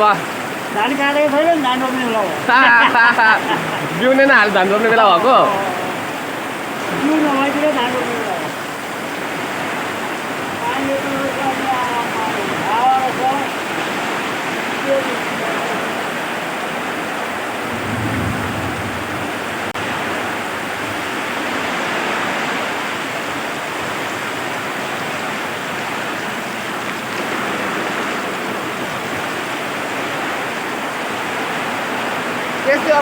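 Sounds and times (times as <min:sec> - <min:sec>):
heavy rain pouring: 0:00.0 - 0:33.0
low rumble: 0:17.6 - 0:20.1.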